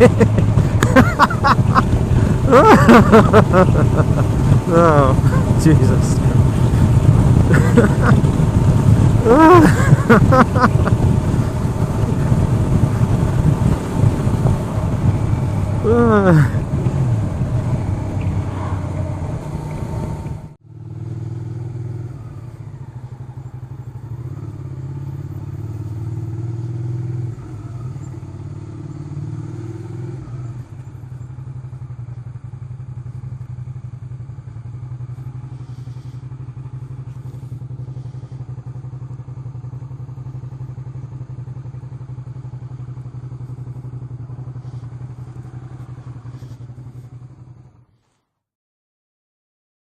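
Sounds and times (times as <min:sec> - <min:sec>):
loud wind noise: 0:00.0 - 0:20.6
motorcycle engine running: 0:00.0 - 0:48.2.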